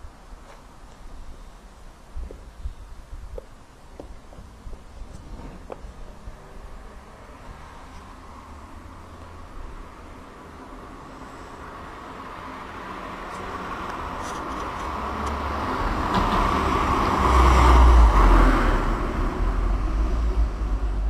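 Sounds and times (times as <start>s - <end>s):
street traffic noise: 0.0s - 21.0s
vehicle passing with deep rumble: 4.6s - 21.0s.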